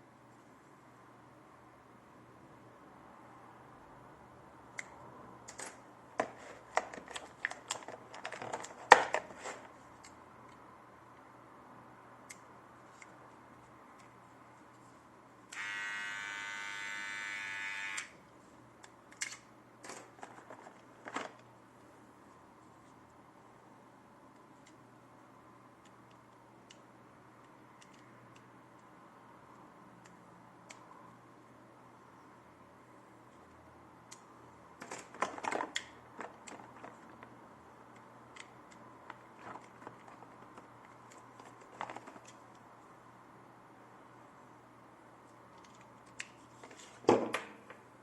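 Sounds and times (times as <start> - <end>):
plastic parts clicking: 5.5 - 9.4, 27.4 - 28.9, 37.9 - 42.5
hair trimmer buzzing: 15.5 - 18.1.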